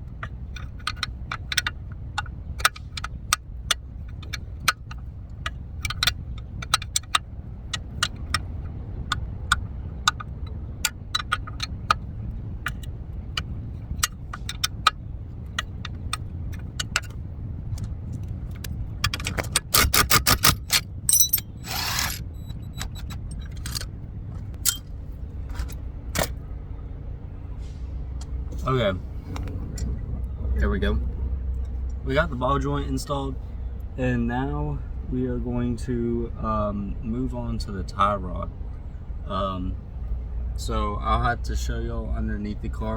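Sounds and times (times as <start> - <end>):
steady low rumble: 0.0 - 42.9
metal tools clicking and clinking: 15.6 - 26.4.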